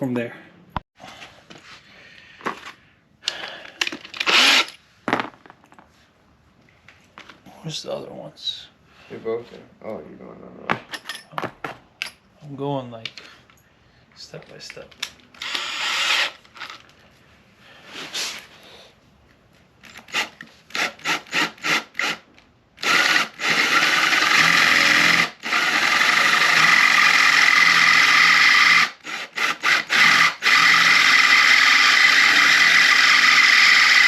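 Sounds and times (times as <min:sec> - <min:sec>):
power drill grinding into metal: 0:04.1 - 0:04.8, 0:15.4 - 0:16.8, 0:22.8 - 0:34.0.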